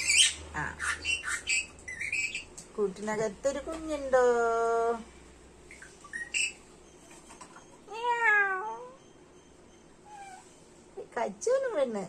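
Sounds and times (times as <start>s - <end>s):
parrot chirp: 0.0s - 2.6s, 5.7s - 6.7s, 9.7s - 10.6s
parrot mewing call: 10.0s - 10.6s.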